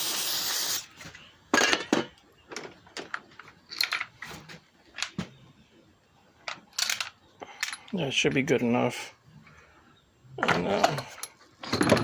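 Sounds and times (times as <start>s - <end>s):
aerosol can spraying: 0.0s - 0.9s
metallic clicks and clinks: 3.1s - 4.2s, 6.4s - 8.0s, 10.4s - 12.0s.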